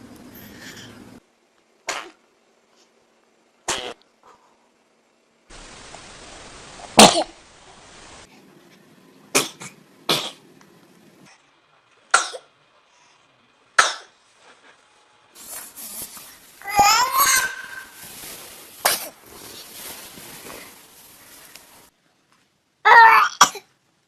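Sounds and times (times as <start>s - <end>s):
background hiss: 0.0s - 24.0s
babies sneezing: 1.9s - 2.2s, 3.7s - 4.0s, 16.6s - 19.2s.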